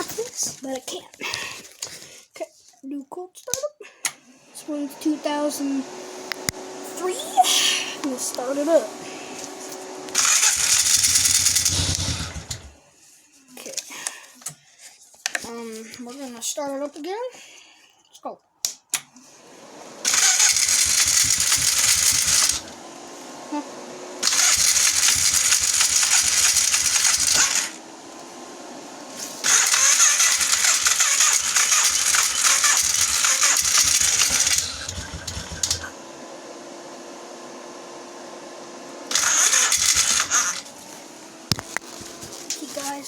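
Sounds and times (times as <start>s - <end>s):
starter cranking engine: 4.2s - 12.9s, 19.4s - 36.3s, 39.0s - 40.8s.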